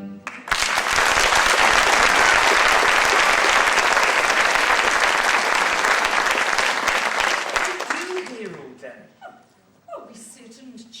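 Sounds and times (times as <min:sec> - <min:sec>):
audience applauding: 0:00.3 - 0:08.6.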